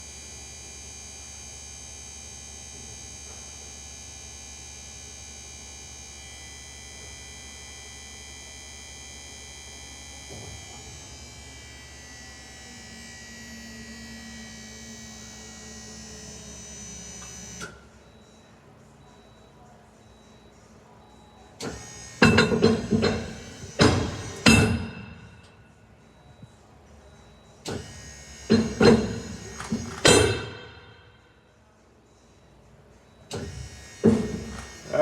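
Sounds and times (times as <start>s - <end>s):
motor cut-off click: 33.3s - 35.0s
electric motor whining: 33.4s - 35.0s.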